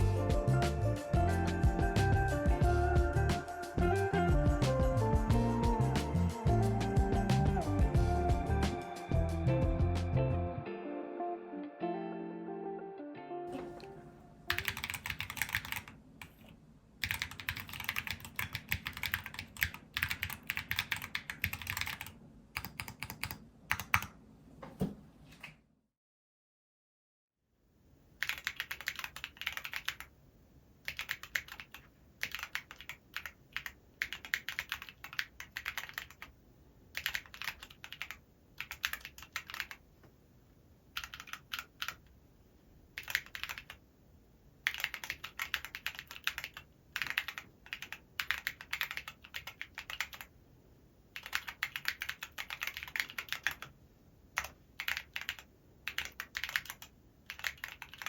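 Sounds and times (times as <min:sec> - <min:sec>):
mechanical keyboard typing: 0:14.5 - 0:24.2, 0:28.2 - 0:30.1, 0:30.8 - 0:36.3, 0:37.0 - 0:39.8, 0:41.0 - 0:42.1, 0:43.0 - 0:43.8, 0:44.6 - 0:50.3, 0:51.2 - 0:53.7, 0:54.4 - 0:58.0.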